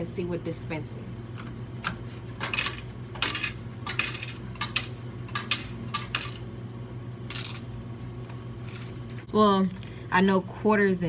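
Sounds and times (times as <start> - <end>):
coins clinking into metal cup: 2.4 - 6.4, 7.3 - 7.7.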